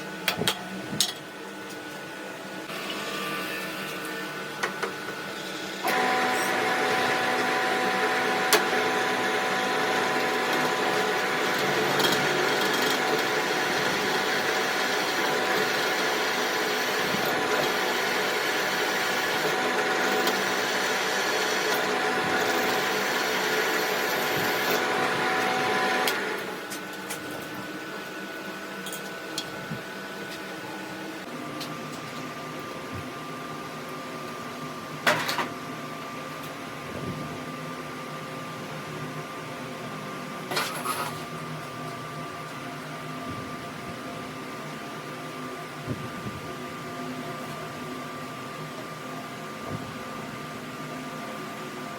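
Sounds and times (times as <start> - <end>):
electric machine tool humming: 5.8 - 26.6.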